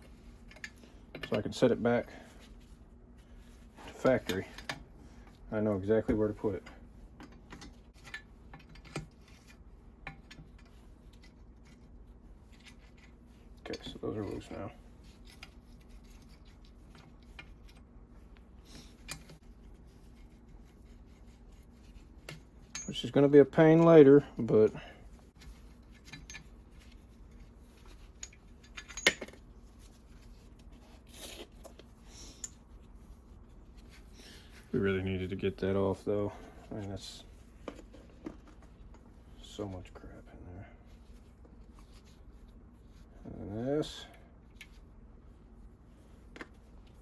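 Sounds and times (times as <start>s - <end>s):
metal parts clinking: 22.6s - 24.1s, 27.9s - 29.5s.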